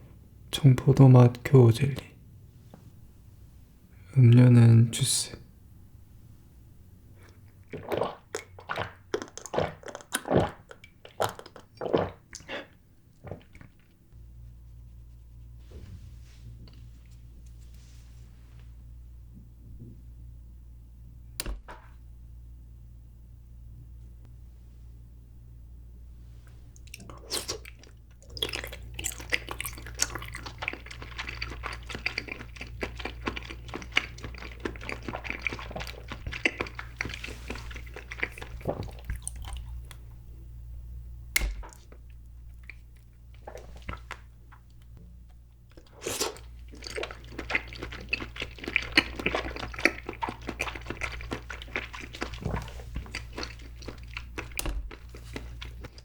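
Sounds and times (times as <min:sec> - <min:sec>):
chewing jelly wet smacks: 0:07.2 - 0:14.0, 0:26.7 - 0:40.2, 0:41.4 - 0:44.9, 0:45.7 - 0:56.0.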